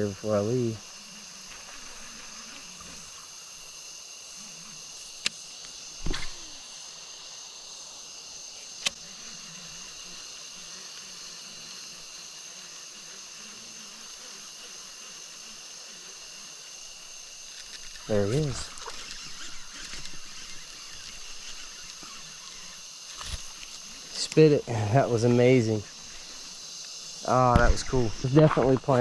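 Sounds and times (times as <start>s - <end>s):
insects chirping: 0.0s - 29.0s
sharp clicks: 5.2s - 6.4s, 8.8s - 9.0s
short thump: 6.0s - 6.4s, 27.4s - 28.7s.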